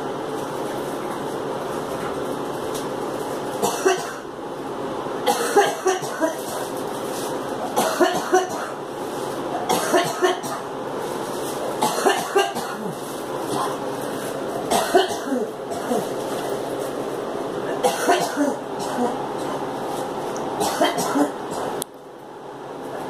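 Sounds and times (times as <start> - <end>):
background hum: 0.0 - 23.0
girl coughing: 3.6 - 4.2, 5.2 - 6.5, 7.8 - 8.8, 9.7 - 10.7, 11.8 - 13.8, 14.7 - 16.1, 17.7 - 19.2, 20.6 - 21.7.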